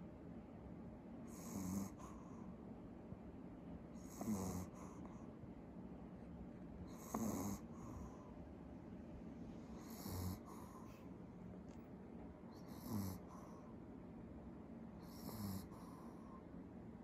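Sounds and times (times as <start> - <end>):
dog snoring: 1.3 - 2.5, 3.9 - 5.3, 6.8 - 8.3, 9.6 - 11.1, 12.5 - 13.7, 15.0 - 16.4.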